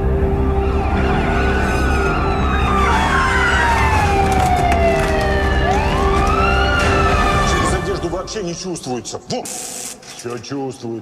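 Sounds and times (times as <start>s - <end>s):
police sirens wailing: 0.0s - 8.4s.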